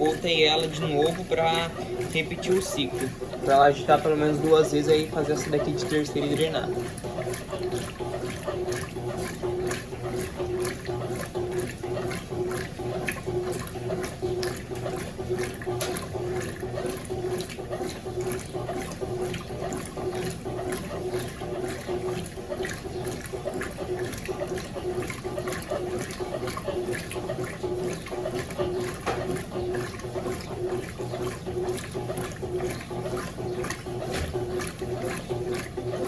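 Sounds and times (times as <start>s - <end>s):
washing machine motor pulsing: 0.0s - 36.0s
water sloshing in washer: 0.0s - 36.0s.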